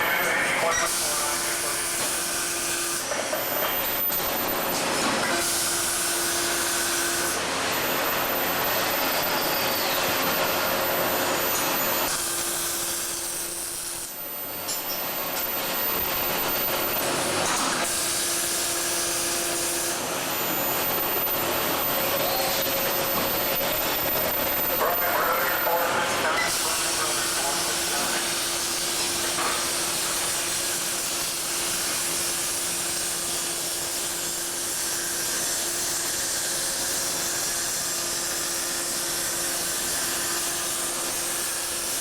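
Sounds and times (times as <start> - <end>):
welding arc hissing crackle: 26.4 - 42.0.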